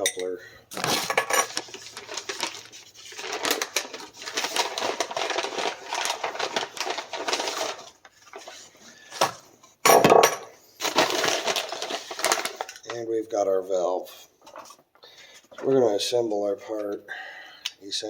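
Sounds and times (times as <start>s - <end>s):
rustling: 0.7s - 8.8s.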